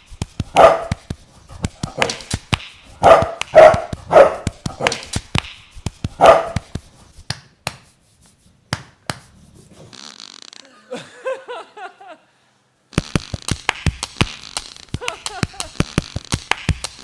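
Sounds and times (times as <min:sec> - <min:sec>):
dog barking: 0:00.5 - 0:01.0, 0:03.0 - 0:05.0, 0:06.2 - 0:06.6.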